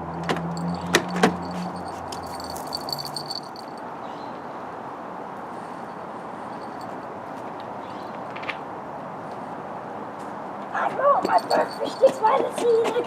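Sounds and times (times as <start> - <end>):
keys jingling: 0.0 - 3.8, 11.2 - 13.0.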